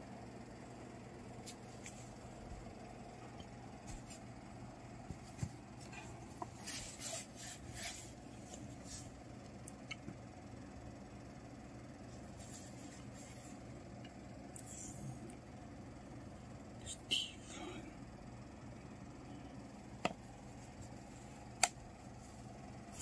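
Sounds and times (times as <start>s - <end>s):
low steady hum: 0.0s - 23.0s
rubbing and scraping: 6.5s - 9.1s.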